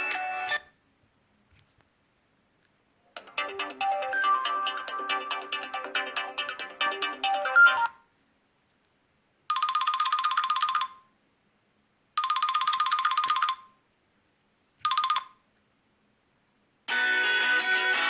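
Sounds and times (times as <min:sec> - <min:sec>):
musical ringtone: 0:00.0 - 0:00.7, 0:03.2 - 0:08.0, 0:09.5 - 0:11.0, 0:12.2 - 0:13.7, 0:14.9 - 0:15.4, 0:16.9 - 0:18.0
trilling phone ringtone: 0:03.3 - 0:08.0, 0:09.5 - 0:11.1, 0:12.2 - 0:13.8, 0:14.8 - 0:15.4.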